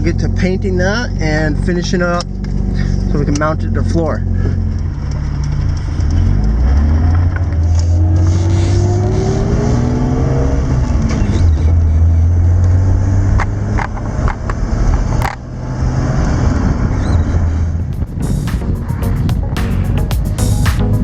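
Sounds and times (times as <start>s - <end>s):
car engine accelerating: 0.0s - 21.0s
road rumble: 0.0s - 21.0s.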